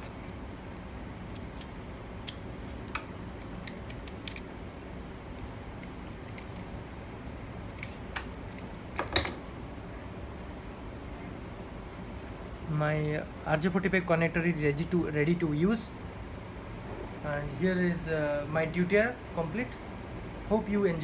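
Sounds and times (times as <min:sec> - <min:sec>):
crimping tool clicks: 0:01.3 - 0:04.6.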